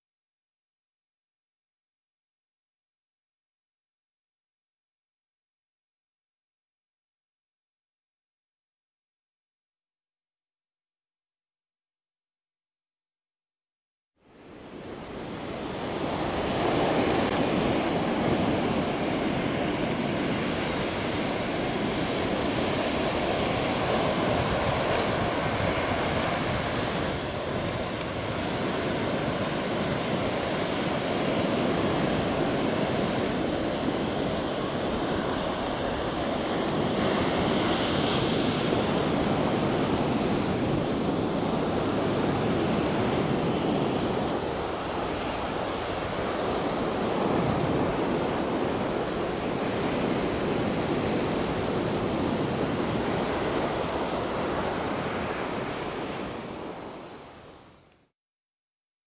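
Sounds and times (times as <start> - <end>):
surf breaking on beach: 14.4 - 57.8
wind buffeting microphone: 14.6 - 56.8.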